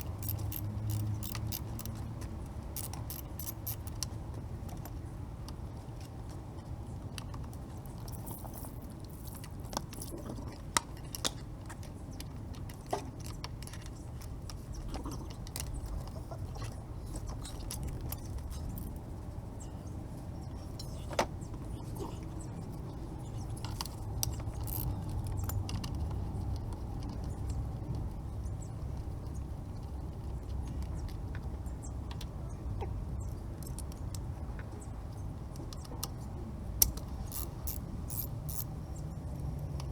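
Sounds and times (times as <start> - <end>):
metallic clicks of tools: 0.0 - 4.1, 23.7 - 26.0, 36.8 - 38.7.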